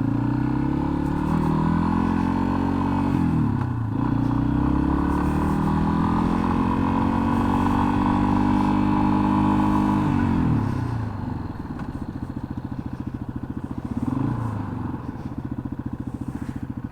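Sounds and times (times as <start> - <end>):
single-cylinder motorcycle engine: 0.0 - 16.9.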